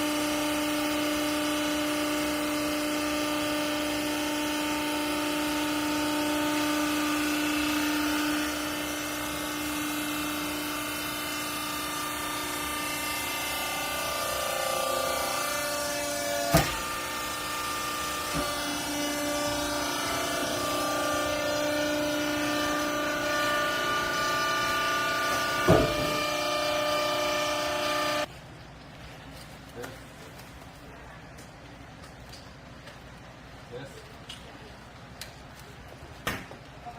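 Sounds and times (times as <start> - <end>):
hydraulic baling press humming: 0.0 - 28.3.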